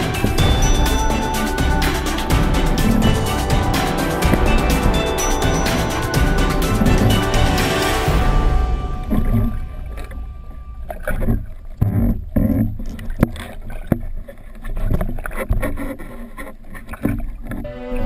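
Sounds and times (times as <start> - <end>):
low rumble: 0.0 - 12.9
water sloshing and bubbling: 4.2 - 17.7.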